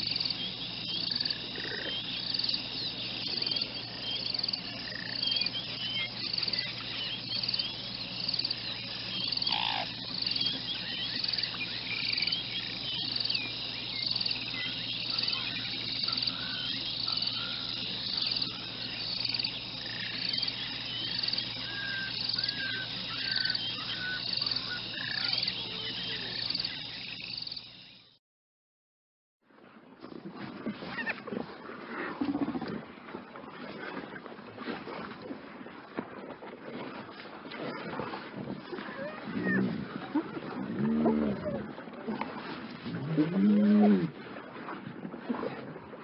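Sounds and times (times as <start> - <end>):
insects chirring: 0.0 - 28.2
short insect chirps: 0.0 - 28.2.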